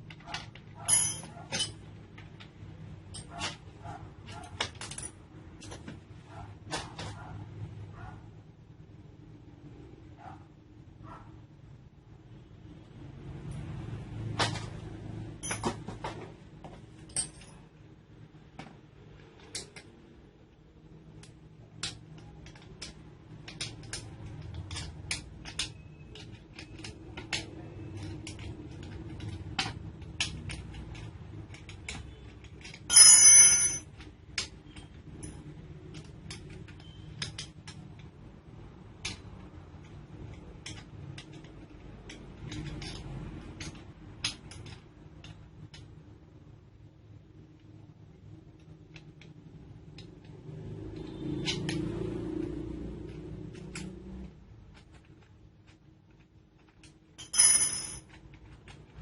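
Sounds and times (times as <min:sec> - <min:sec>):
small metal parts clicking: 0:00.0 - 0:03.6, 0:04.3 - 0:05.8, 0:15.4 - 0:15.8, 0:21.1 - 0:38.2, 0:38.9 - 0:46.0, 0:51.0 - 0:59.0.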